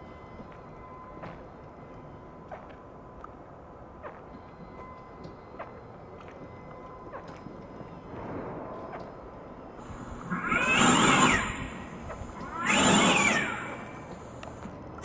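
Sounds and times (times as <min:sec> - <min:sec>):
recorded animal call from loudspeaker: 0:09.8 - 0:14.2.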